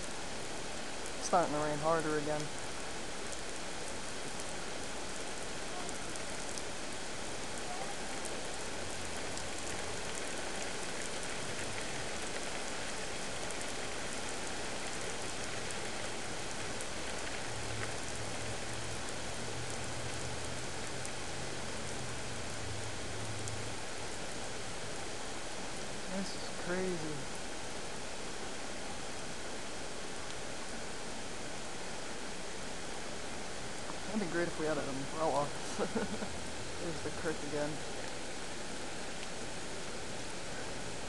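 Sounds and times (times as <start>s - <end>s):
flooded creek rushing: 0.0s - 41.0s
heavy rain pattering: 0.0s - 41.0s.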